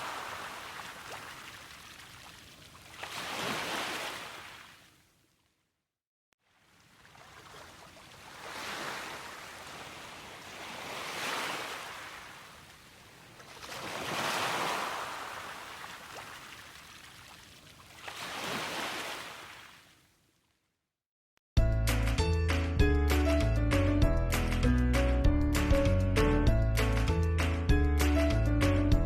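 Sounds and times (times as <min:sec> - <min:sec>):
small waves washing onto shore: 0:00.0 - 0:05.0, 0:06.4 - 0:20.0.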